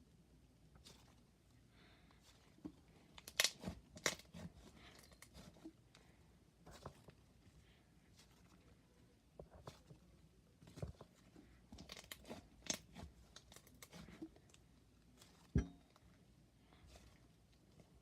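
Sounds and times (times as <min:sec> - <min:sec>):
slime crackling and popping: 0:03.2 - 0:04.4
dull thump: 0:15.6 - 0:15.8.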